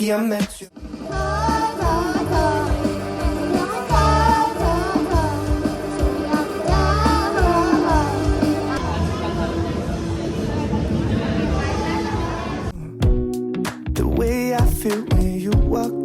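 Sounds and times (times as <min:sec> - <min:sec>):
soft pop song with singing: 0:00.0 - 0:08.8, 0:14.0 - 0:16.0.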